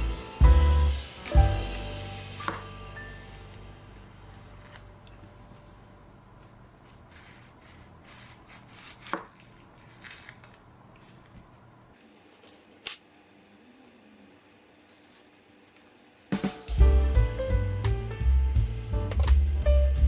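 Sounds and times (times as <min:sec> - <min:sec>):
loud guitar and drums music: 0:00.0 - 0:03.4, 0:16.4 - 0:20.0.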